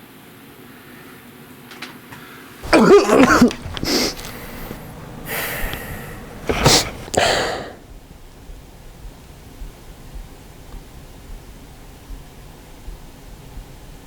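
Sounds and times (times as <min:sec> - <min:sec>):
breathy exhale: 0:02.2 - 0:07.8
person coughing: 0:02.6 - 0:07.8.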